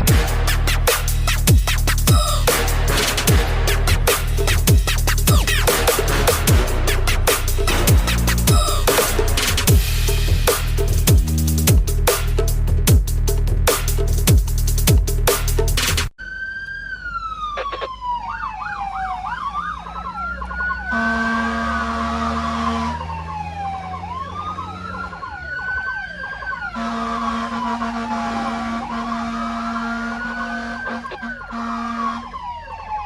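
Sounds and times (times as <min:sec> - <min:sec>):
emergency siren wailing: 0:16.2 - 0:33.0.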